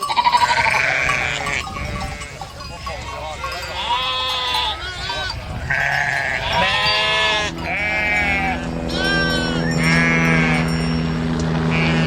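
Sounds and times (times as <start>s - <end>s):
sheep bleating: 0.0s - 10.8s, 11.7s - 12.0s
steady low hum: 4.2s - 12.0s.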